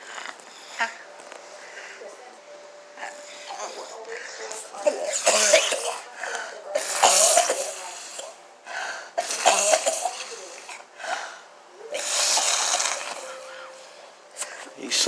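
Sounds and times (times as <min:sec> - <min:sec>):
woman coughing: 0:03.0 - 0:08.4, 0:09.1 - 0:11.3, 0:11.9 - 0:13.7.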